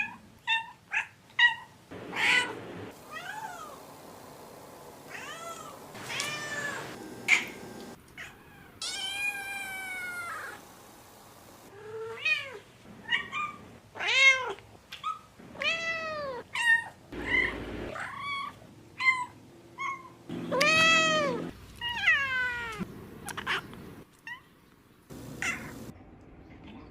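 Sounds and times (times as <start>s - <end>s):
cat meowing: 5.1s - 7.6s, 8.2s - 10.6s, 15.6s - 23.6s, 25.4s - 25.8s.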